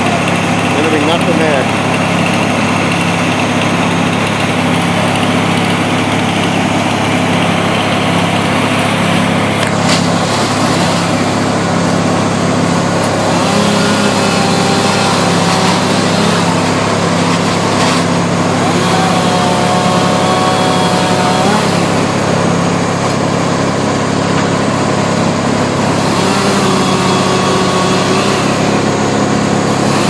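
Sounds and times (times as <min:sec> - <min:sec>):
engine idling: 0:00.0 - 0:30.0.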